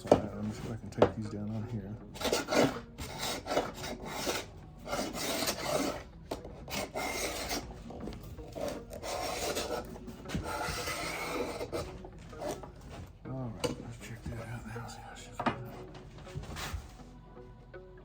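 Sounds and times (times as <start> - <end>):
sanding wood by hand: 2.2 - 6.0.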